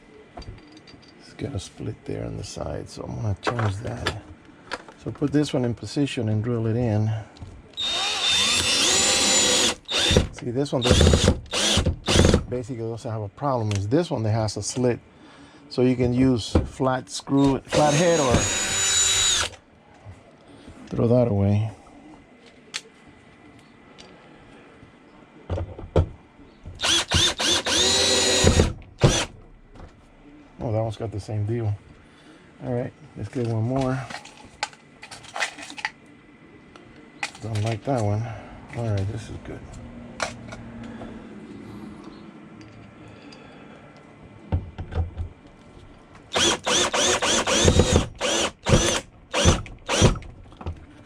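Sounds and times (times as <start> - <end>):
power drill driving screw: 7.8 - 12.4, 17.7 - 19.6, 26.8 - 29.3, 46.3 - 50.2.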